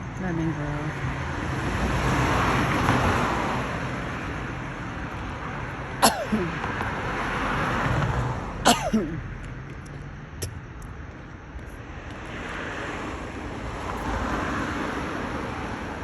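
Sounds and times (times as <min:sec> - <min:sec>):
cars passing: 0:00.0 - 0:16.0
sharp cough: 0:06.0 - 0:06.6, 0:08.6 - 0:09.2.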